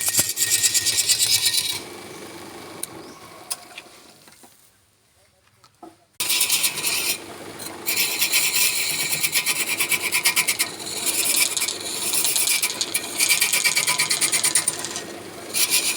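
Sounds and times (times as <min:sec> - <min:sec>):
lathe tool scraping wood: 0:00.0 - 0:02.2, 0:06.2 - 0:15.9.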